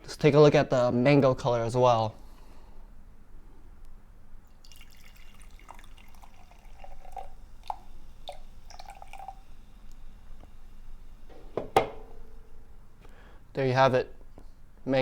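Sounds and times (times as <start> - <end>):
soda fizzing in glass: 4.5 - 11.3
drips and splashes: 4.6 - 9.5.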